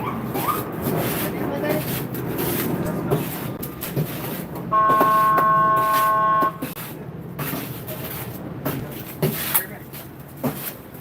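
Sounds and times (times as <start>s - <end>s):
traffic noise: 0.0s - 11.0s
car horn blast: 4.7s - 6.7s.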